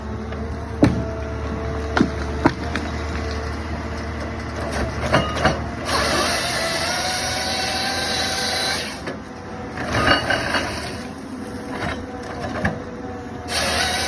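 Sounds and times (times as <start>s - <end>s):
harvester machine running: 0.0s - 14.0s
timber knocks and cracks: 0.8s - 1.1s, 1.9s - 3.4s.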